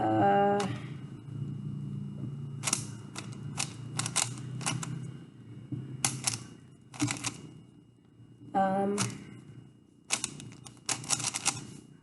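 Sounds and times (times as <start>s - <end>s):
plastic puzzle cube clicking: 2.6s - 4.9s, 6.0s - 7.4s, 10.1s - 11.7s.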